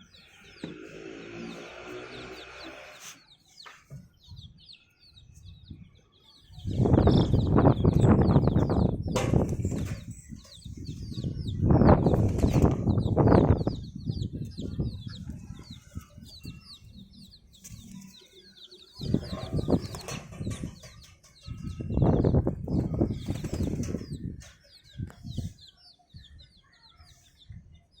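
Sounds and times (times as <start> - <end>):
chicks peeping: 0.0 - 28.0
wings flapping: 12.0 - 12.9, 19.1 - 21.2, 22.8 - 24.2.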